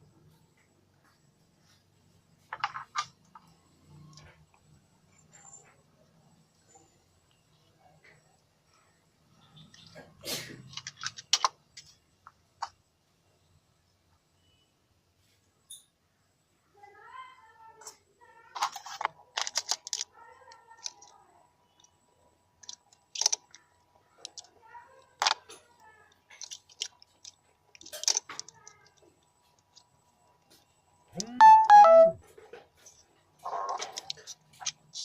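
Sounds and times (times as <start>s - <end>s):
electronic parts and tools handled: 18.6s - 20.1s, 20.8s - 21.2s, 22.6s - 23.6s, 26.2s - 29.8s, 32.7s - 35.0s.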